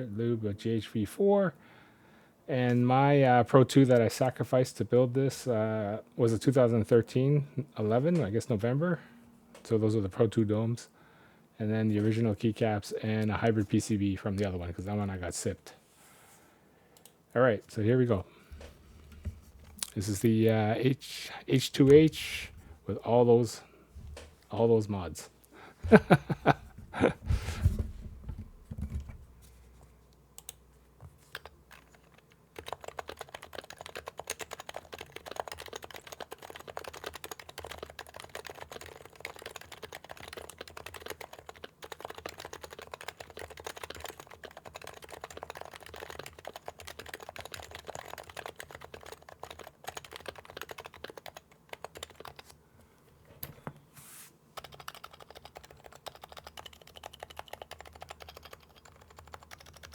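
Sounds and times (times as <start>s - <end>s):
keyboard typing: 31.2s - 52.5s, 54.6s - 59.9s.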